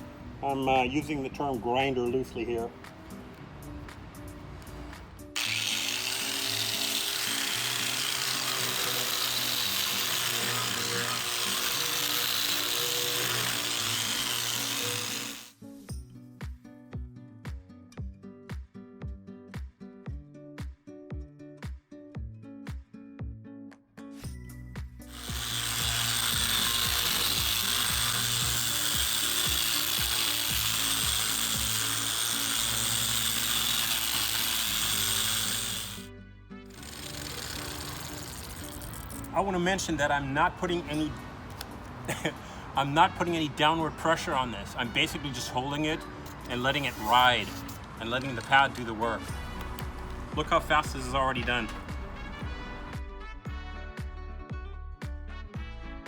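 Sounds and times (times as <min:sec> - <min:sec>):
background music: 0:00.0 - 0:56.0
angle grinder scrubbing metal: 0:05.4 - 0:15.5, 0:25.1 - 0:36.1, 0:36.7 - 0:39.9, 0:44.2 - 0:49.7.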